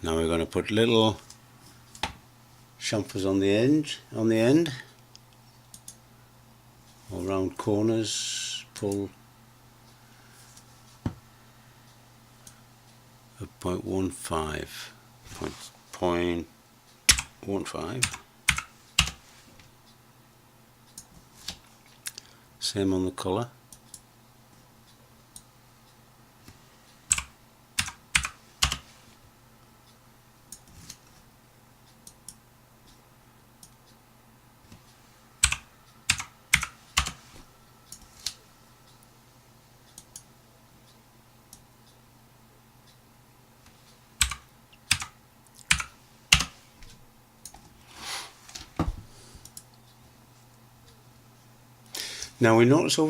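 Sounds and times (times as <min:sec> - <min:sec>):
keyboard and mouse clicks: 0:35.4 - 0:37.2, 0:44.2 - 0:46.5.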